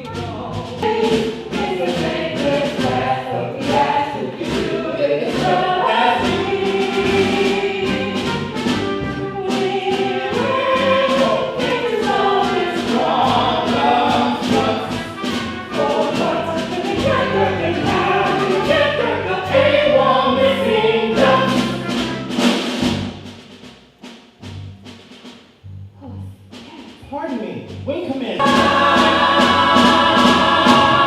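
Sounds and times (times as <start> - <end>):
instrumental accompaniment with beat: 0.0 - 27.0, 27.7 - 31.0
ensemble singing choral number: 0.5 - 22.4, 28.4 - 31.0.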